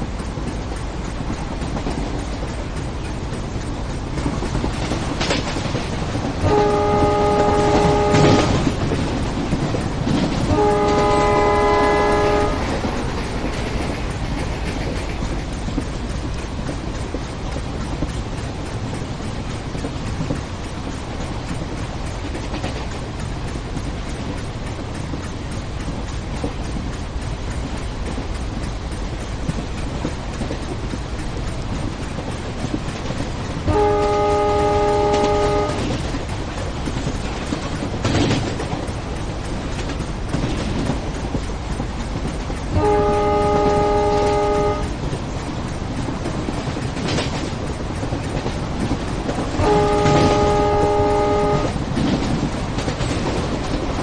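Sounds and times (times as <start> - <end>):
running train rumble: 0.0 - 54.0
train horn blast: 6.4 - 8.8, 10.4 - 13.8, 33.7 - 36.0, 42.7 - 44.9, 49.5 - 51.8.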